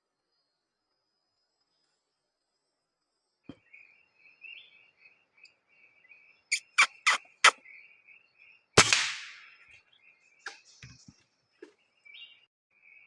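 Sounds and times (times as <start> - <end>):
birds chirping: 3.5 - 13.0
air rifle shot: 8.8 - 9.6
sharp loud clicks: 8.8 - 9.6.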